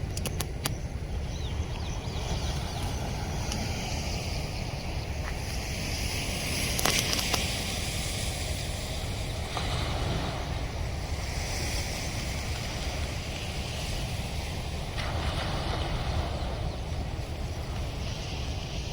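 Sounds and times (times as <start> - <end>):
brief clicks: 0.1 - 0.8
floodwater rushing through dam: 2.6 - 18.9.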